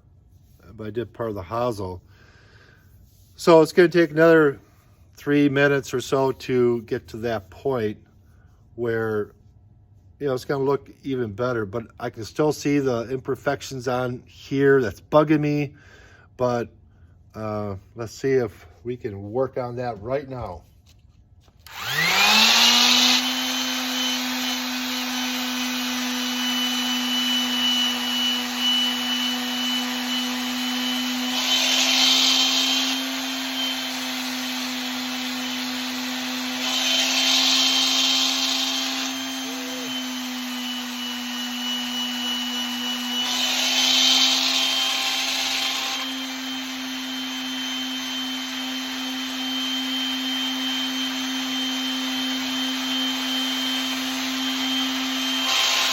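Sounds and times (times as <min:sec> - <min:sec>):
electric sander humming: 0:21.7 - 0:55.9.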